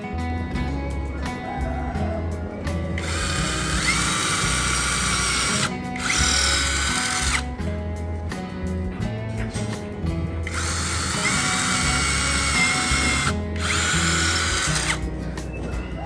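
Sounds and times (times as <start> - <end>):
background music: 0.0 - 16.0
power tool whining: 3.0 - 7.5, 10.4 - 15.2.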